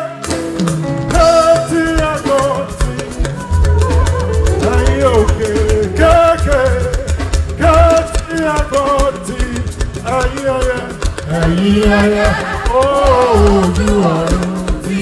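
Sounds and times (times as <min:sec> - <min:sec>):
drums: 0:00.0 - 0:15.0
praise song singing: 0:00.0 - 0:15.0
low bass note: 0:03.5 - 0:07.7.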